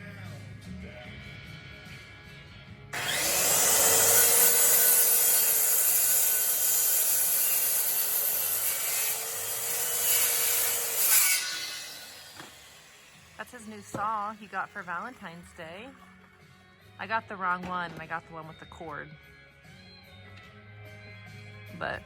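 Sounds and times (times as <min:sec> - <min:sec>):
electric saw cutting wood: 0:03.0 - 0:15.9.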